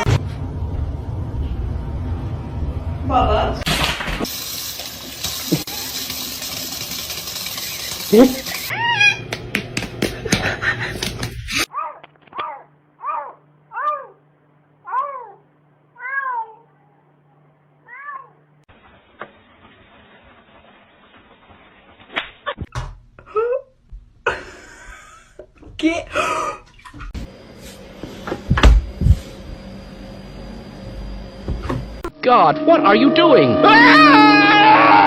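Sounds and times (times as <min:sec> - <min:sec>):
cat meowing: 0:08.7 - 0:09.3, 0:14.9 - 0:15.4, 0:16.0 - 0:16.9, 0:17.8 - 0:18.4.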